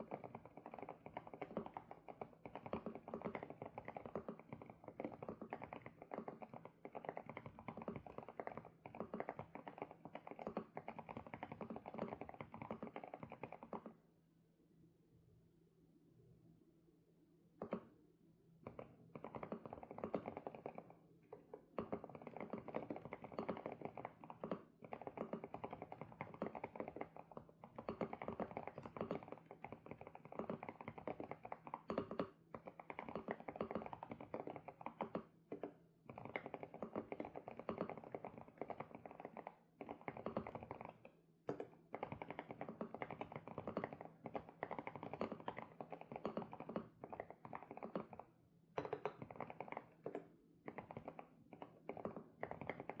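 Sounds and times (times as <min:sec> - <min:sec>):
mechanical keyboard typing: 0:48.8 - 0:53.0.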